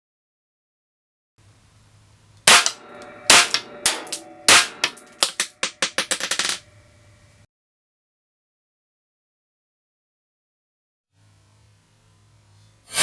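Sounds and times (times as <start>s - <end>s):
blank pistol shots: 2.5s - 6.3s
quieter sharp cracks and clicks: 2.5s - 6.6s.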